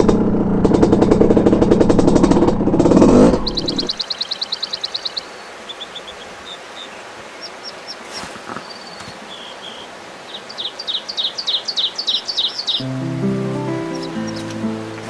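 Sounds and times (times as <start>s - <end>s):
small bird chirping: 3.3s - 15.0s
faint steady hiss: 4.0s - 15.0s.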